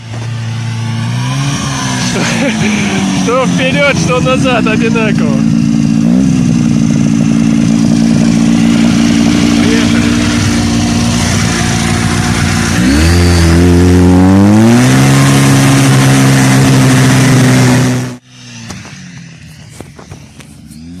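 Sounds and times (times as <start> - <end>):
snowmobile engine revving: 0.0 - 21.0.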